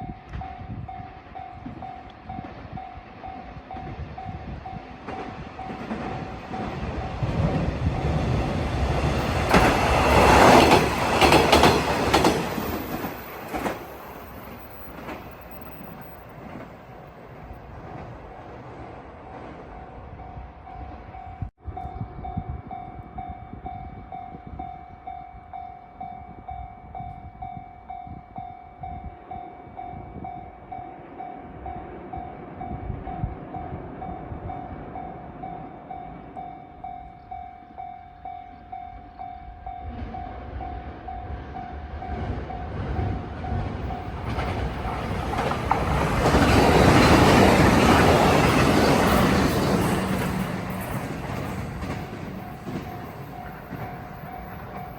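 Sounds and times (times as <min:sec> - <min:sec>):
train passing: 0:00.0 - 0:54.9
level crossing warning bell: 0:33.6 - 0:54.9.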